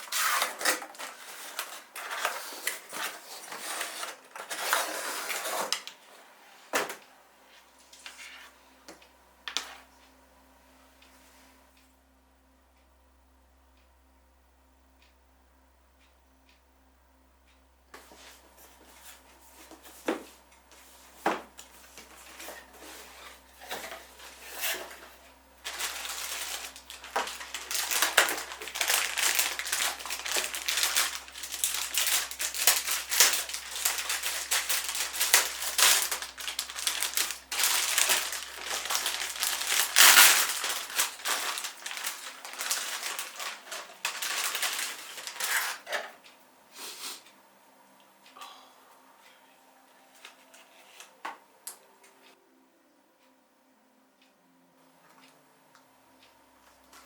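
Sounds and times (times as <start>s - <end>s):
packaging crinkling and rustling: 0.0s - 6.1s, 21.3s - 46.2s.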